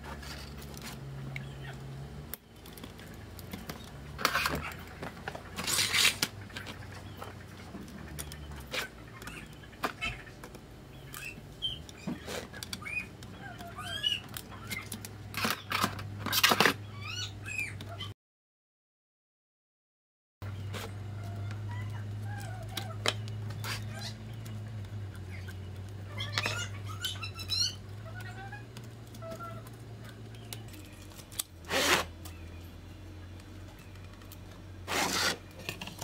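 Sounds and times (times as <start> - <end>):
scraping or rustling noises: 0.0 - 1.9, 2.6 - 10.6, 11.8 - 12.8, 20.5 - 25.2, 25.9 - 32.2, 34.1 - 36.0
low steady hum: 0.0 - 18.1, 20.4 - 36.0
small birds chirping: 0.0 - 18.2, 20.4 - 36.0.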